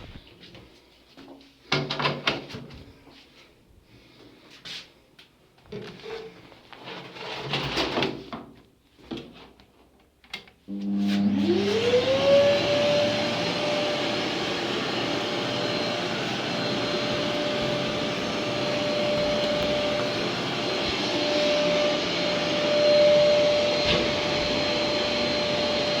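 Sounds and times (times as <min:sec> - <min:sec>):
vacuum motor whining and rushing air: 0:10.7 - 0:26.0.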